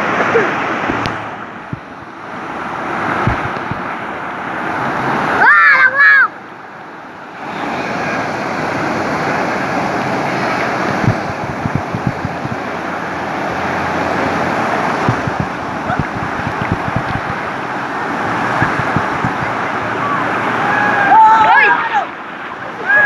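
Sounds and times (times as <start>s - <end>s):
water rushing: 0.0s - 23.0s
wind buffeting microphone: 0.9s - 4.2s, 10.8s - 20.6s.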